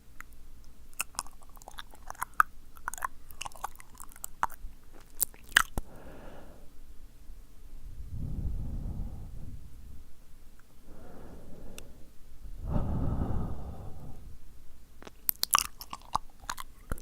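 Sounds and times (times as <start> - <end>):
tongue clicks and lip smacks: 0.1 - 5.9, 15.0 - 17.0
breathy mouth sound: 8.1 - 9.8, 10.8 - 14.4.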